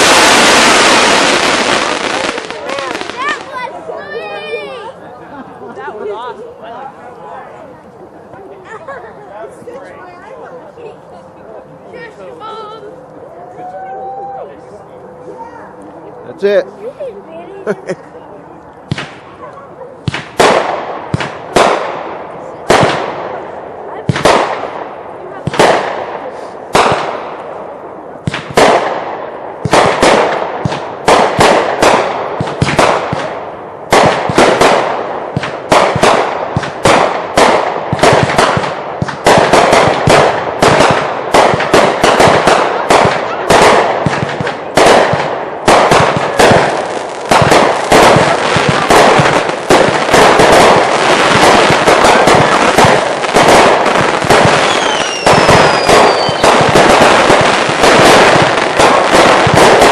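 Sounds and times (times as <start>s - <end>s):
fireworks bangs and crackles: 0.0s - 5.0s, 18.8s - 59.9s.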